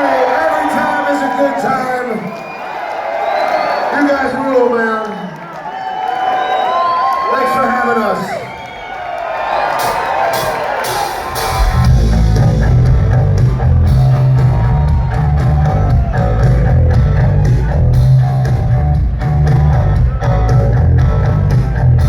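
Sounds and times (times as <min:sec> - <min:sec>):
live rock band playing: 0:09.7 - 0:22.0.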